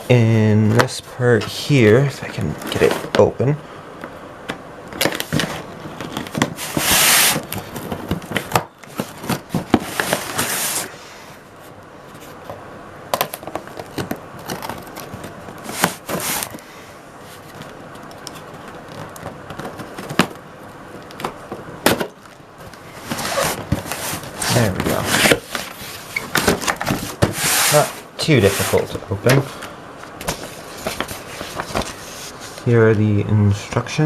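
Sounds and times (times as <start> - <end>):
crackling and scraping packaging: 2.2 - 3.6, 4.9 - 12.6, 13.2 - 32.8
packaging rustling: 4.9 - 11.0, 11.6 - 32.7.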